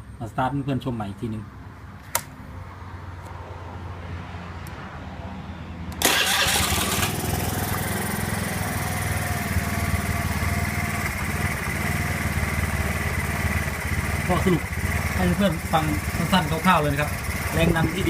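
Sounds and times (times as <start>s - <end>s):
scooter engine cranking and idling: 5.9s - 18.0s.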